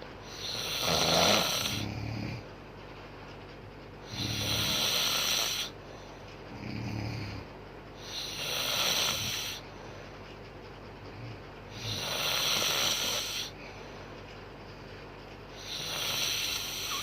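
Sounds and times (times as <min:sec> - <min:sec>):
woman snoring: 0:00.4 - 0:02.4, 0:04.1 - 0:05.7, 0:08.0 - 0:09.6, 0:11.8 - 0:13.6, 0:15.6 - 0:17.0.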